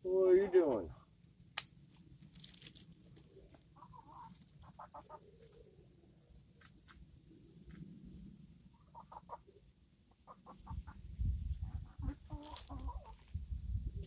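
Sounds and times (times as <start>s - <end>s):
chickens clucking: 3.3s - 5.8s, 8.8s - 13.4s.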